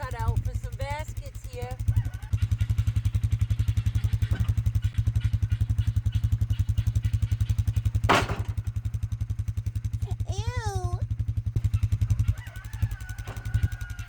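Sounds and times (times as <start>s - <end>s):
low machine pulsing steadily: 0.0s - 14.0s
sharp clatter: 2.5s - 9.2s.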